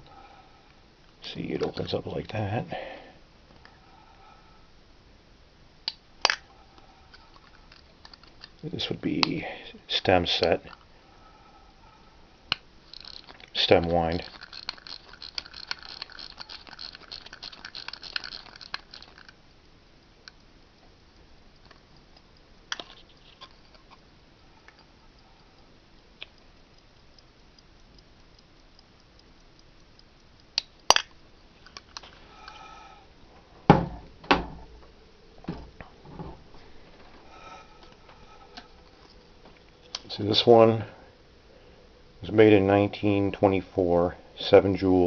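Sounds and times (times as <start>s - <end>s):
watch winding ratchet clicking: 7.1s - 8.6s, 12.8s - 19.4s.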